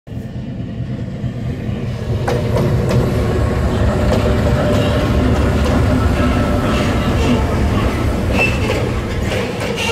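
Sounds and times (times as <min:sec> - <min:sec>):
locomotive engine rumbling: 0:00.1 - 0:09.9.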